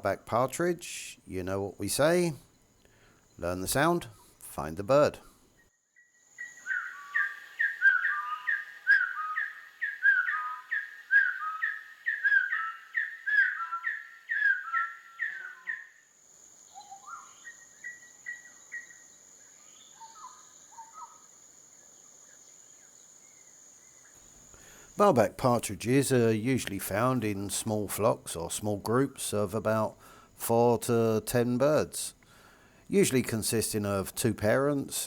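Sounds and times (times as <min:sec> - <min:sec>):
partridge whistled calls: 0:06.4 - 0:16.0, 0:16.7 - 0:21.3.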